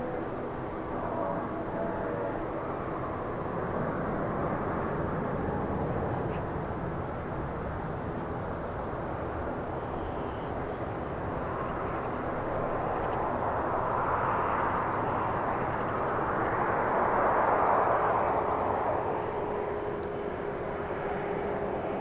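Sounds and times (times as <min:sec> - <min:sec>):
jet airliner passing: 0:09.2 - 0:22.0.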